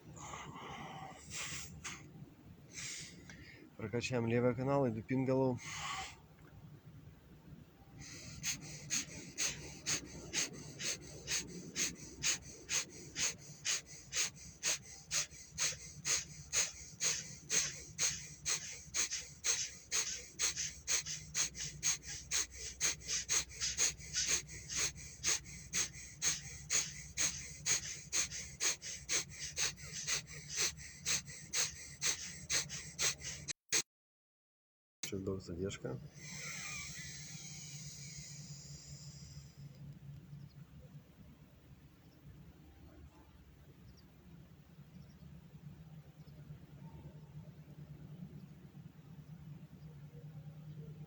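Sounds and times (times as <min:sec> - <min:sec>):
rapid nasal breathing: 0:00.0 - 0:02.1, 0:02.7 - 0:03.8, 0:05.6 - 0:06.2, 0:08.0 - 0:33.8, 0:36.0 - 0:39.8.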